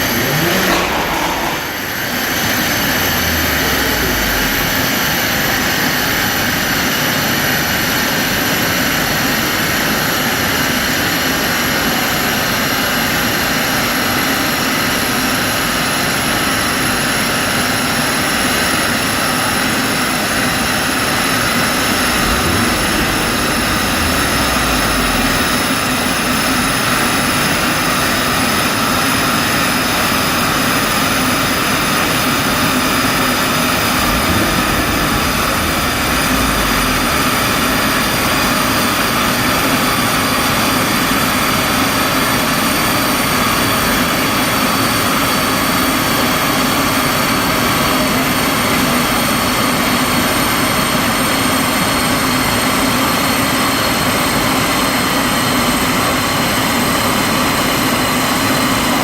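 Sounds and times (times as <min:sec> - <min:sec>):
fan noise: 0:00.0 - 0:05.4, 0:21.6 - 0:27.7, 0:33.2 - 0:39.6
high whine: 0:00.0 - 0:05.9, 0:21.0 - 0:28.6, 0:32.5 - 0:40.2
car engine running: 0:21.7 - 0:27.3, 0:33.7 - 0:38.9.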